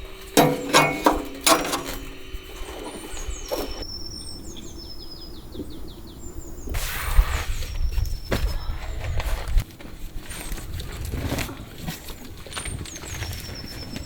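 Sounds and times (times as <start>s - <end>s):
knocks and rustles: 0.0s - 3.8s.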